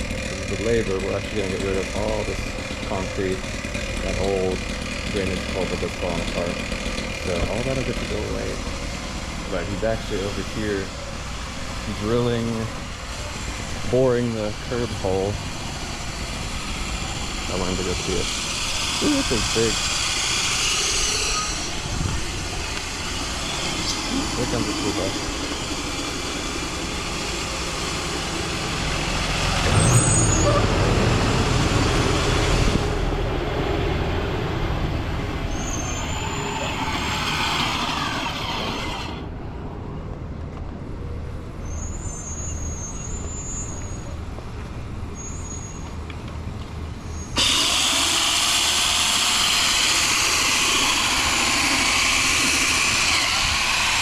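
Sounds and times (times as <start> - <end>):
bus diesel engine: 0.0 - 54.0
high squeaks: 18.0 - 26.2, 29.6 - 30.8, 35.4 - 39.3, 41.6 - 44.1
air brakes hissing: 35.5 - 39.2.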